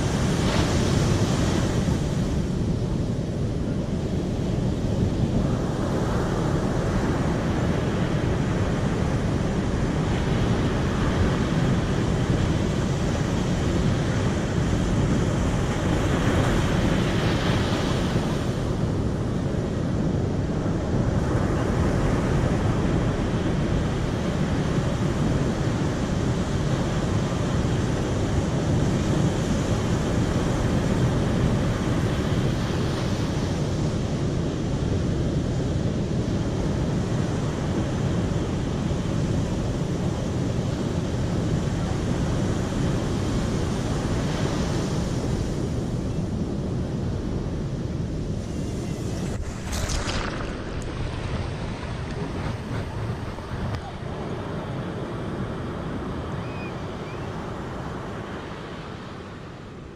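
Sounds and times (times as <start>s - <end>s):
water rushing: 48.6s - 54.2s.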